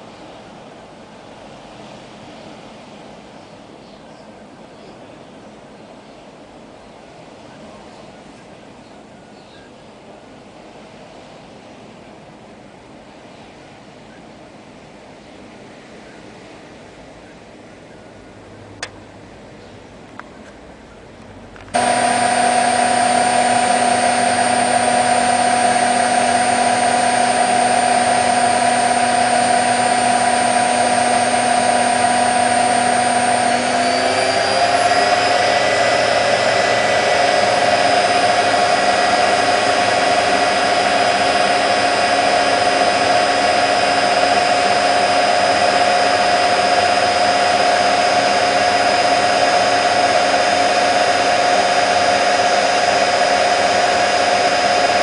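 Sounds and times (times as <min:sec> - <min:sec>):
washing machine spin whine: 0:21.7 - 0:55.0.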